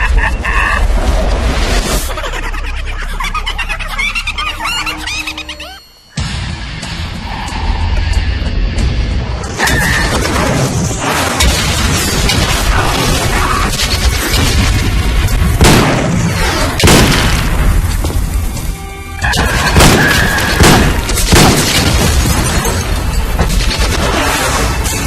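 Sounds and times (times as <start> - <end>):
action film music: 0.0 - 25.0.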